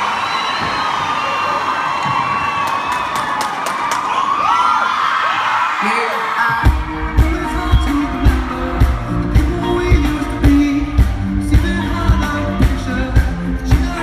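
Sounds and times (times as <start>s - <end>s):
live pop rock band: 5.9s - 14.0s
drums steady beat: 6.6s - 14.0s.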